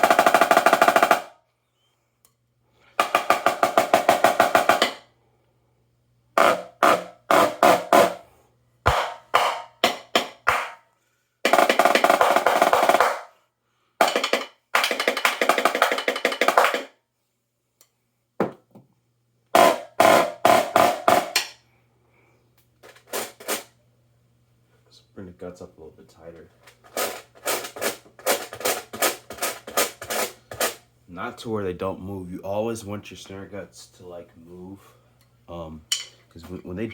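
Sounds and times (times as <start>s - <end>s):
high-tuned snare drum strokes: 0.0s - 1.3s, 3.0s - 5.0s, 6.4s - 8.3s, 8.9s - 13.4s, 14.0s - 16.9s, 19.6s - 21.5s, 23.0s - 23.7s, 26.8s - 30.8s
snare drum rolls: 0.0s - 1.3s, 3.0s - 5.0s, 6.4s - 8.2s, 8.9s - 10.8s, 11.4s - 13.3s, 14.0s - 16.9s, 19.6s - 21.4s.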